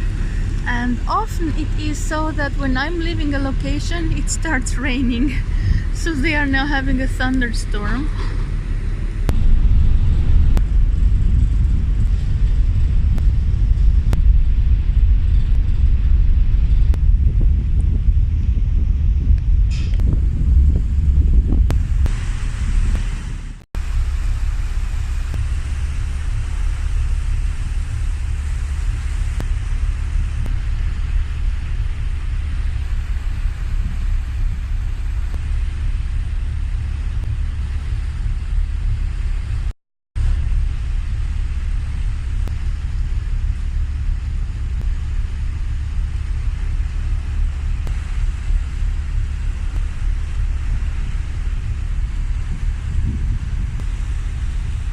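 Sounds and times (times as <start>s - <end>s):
ferry engine rumble: 0.0s - 54.9s
wind noise on microphone: 0.0s - 54.9s.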